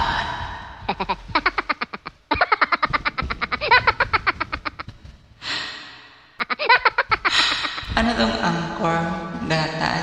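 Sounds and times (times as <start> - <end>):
laugh-like vocal pulses: 0.9 - 4.9, 6.4 - 7.9.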